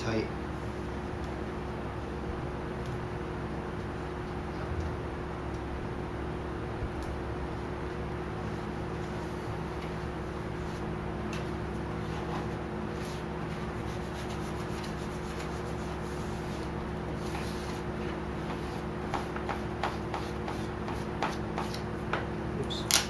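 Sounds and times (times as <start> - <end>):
steady low hum: 0.0 - 23.0
vinyl film rubbing: 8.9 - 21.9.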